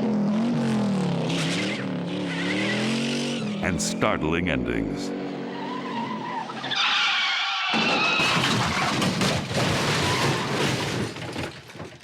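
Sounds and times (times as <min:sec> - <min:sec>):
loud car crash: 0:07.3 - 0:12.0
breaking and falling debris: 0:07.7 - 0:12.0.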